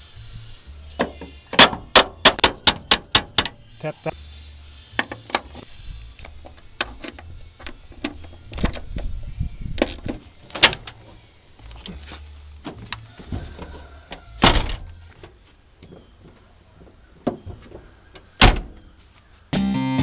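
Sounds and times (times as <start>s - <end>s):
metal knocks and clunks: 1.0s - 3.6s.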